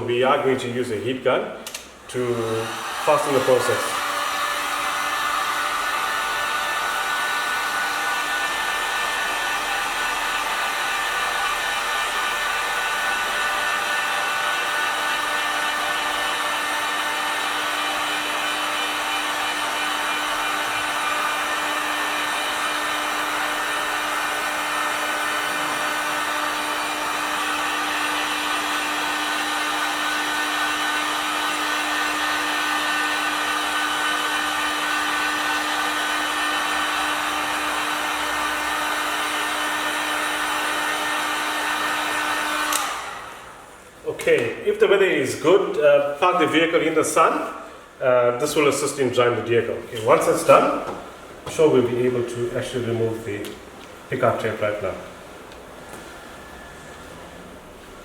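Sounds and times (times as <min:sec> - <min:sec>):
heat gun motor whine: 0:01.7 - 0:43.6.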